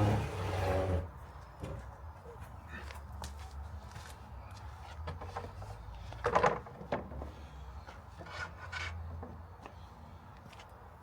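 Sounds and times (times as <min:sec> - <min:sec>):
wood scraping against wood: 0:00.0 - 0:01.2, 0:07.9 - 0:09.0.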